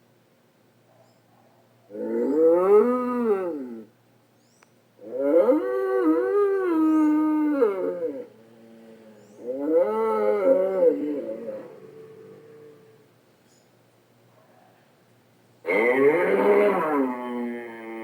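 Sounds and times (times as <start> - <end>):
cartoon bull calls: 15.7 - 18.0.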